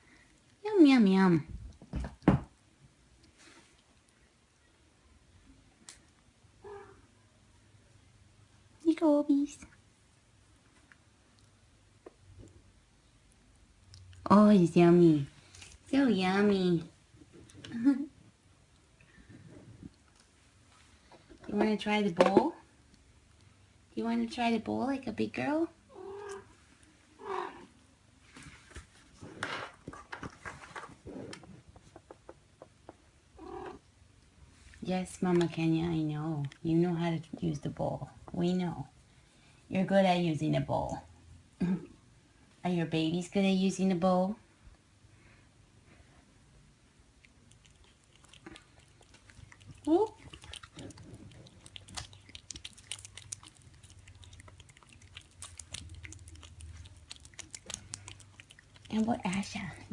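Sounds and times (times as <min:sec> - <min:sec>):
low steady hum: 0:00.0 - 0:59.9
cat eating wet food: 0:47.0 - 0:59.9.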